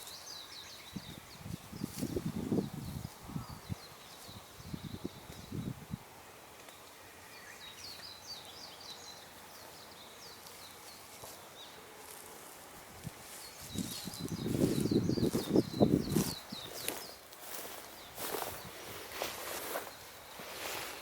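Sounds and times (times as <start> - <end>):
birds chirping: 6.6 - 12.5, 13.2 - 21.0.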